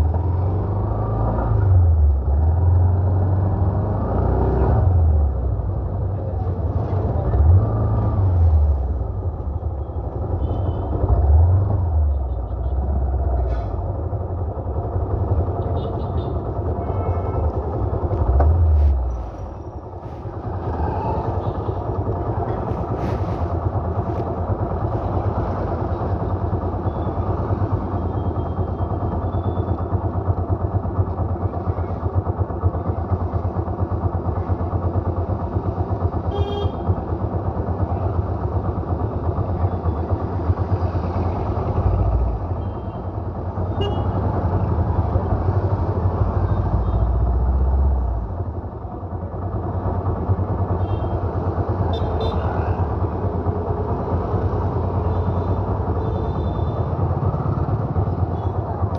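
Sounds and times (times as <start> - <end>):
road traffic passing: 0.0 - 58.9
motorbikes passing: 17.4 - 26.7.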